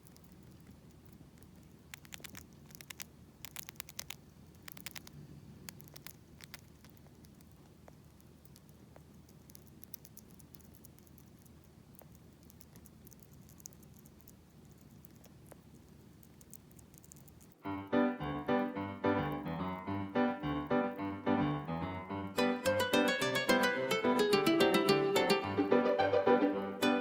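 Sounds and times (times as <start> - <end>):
chipmunk fast faint clicks: 0.0 - 17.6.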